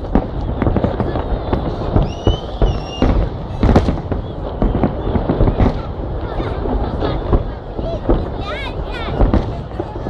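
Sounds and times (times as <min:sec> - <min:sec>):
fireworks bangs: 0:00.0 - 0:10.0
voices of onlookers: 0:00.0 - 0:10.0
high firework whistle: 0:01.7 - 0:04.3.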